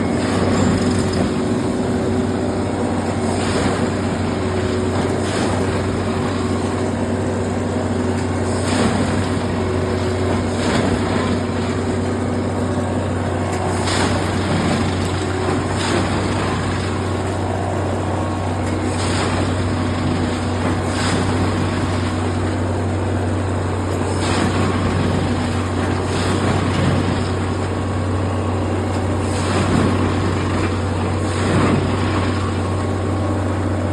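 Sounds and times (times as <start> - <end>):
low engine drone: 0.0 - 33.9.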